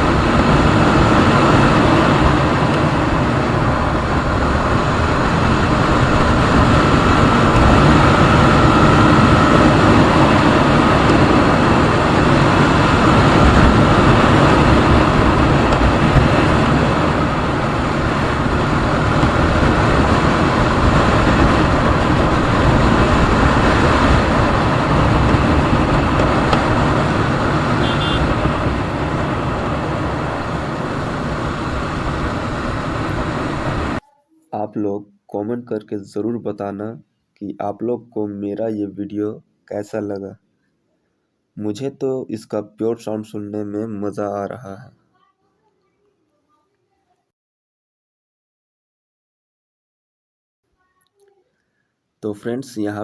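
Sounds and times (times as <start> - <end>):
motorcycle engine running: 0.0 - 34.0
road and wind noise: 0.0 - 34.0.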